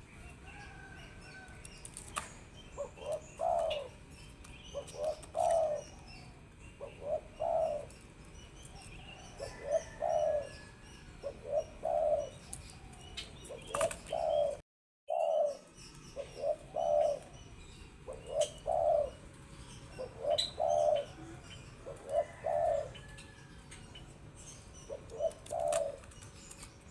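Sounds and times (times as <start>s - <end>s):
small birds chirping: 0.0s - 26.9s
dove cooing: 2.7s - 8.0s, 8.7s - 17.4s, 18.0s - 23.6s, 24.8s - 26.3s.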